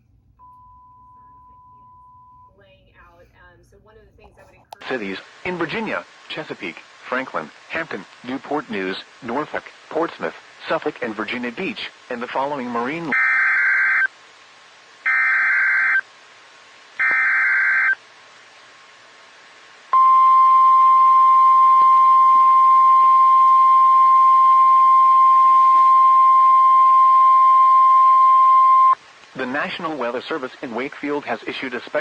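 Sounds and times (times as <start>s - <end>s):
steady warning alarm tone: 13.1s - 14.1s, 15.1s - 16.0s, 17.0s - 18.0s, 20.0s - 29.0s.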